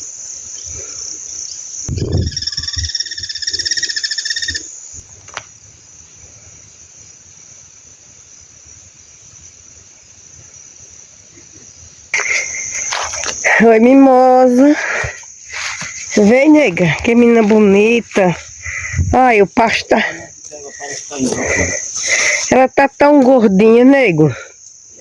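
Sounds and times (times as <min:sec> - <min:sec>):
crickets chirring: 0:00.0 - 0:25.0
frog pulsing trill: 0:01.9 - 0:04.7.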